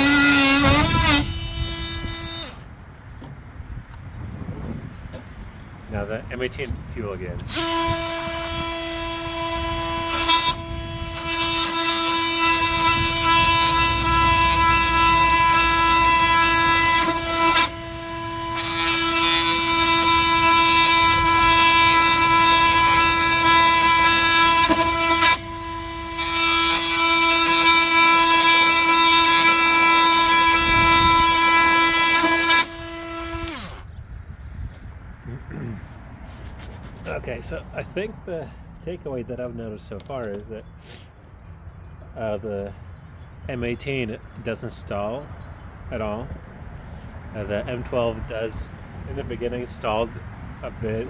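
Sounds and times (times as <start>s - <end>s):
oscillating multi-tool cutting wood: 0.0s - 2.8s, 7.4s - 34.0s.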